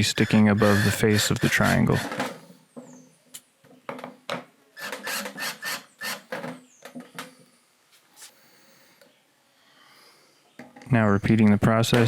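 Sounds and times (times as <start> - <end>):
scraping strokes on wood: 0.0 - 2.3.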